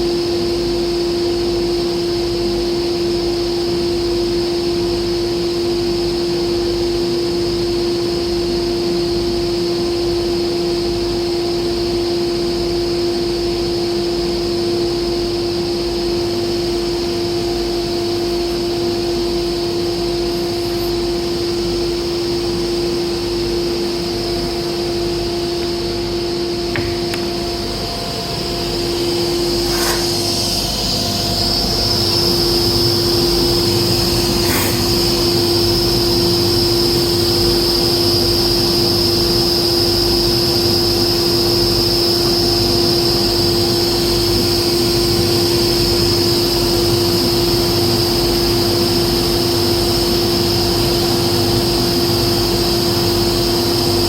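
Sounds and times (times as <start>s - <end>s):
machine hum with high whine: 0.0s - 54.0s
brief knocks: 26.7s - 27.5s.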